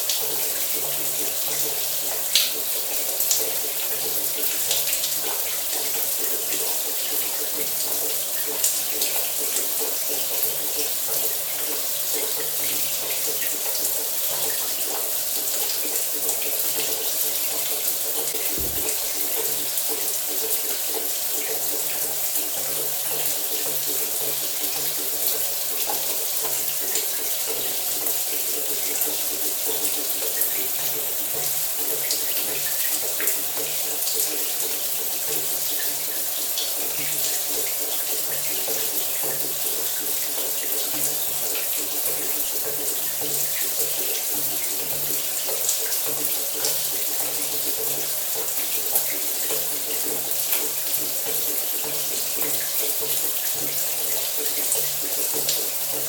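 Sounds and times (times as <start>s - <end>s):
shower water spraying: 18.4s - 19.8s.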